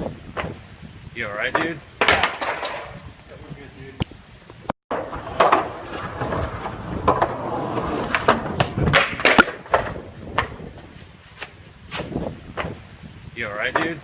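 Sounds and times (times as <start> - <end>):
skateboard wheels rumbling on pavement: 0.0 - 14.0
skateboard crash knocks and thuds: 2.0 - 3.1, 4.9 - 10.8.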